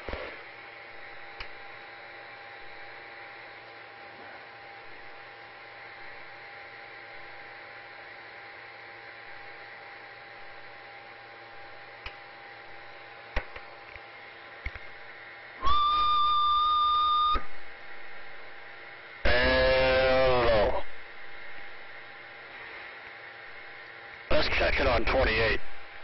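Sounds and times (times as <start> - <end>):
radio static hiss: 0.0 - 2.0, 11.5 - 26.0
whistle-like radio tone: 15.6 - 17.5.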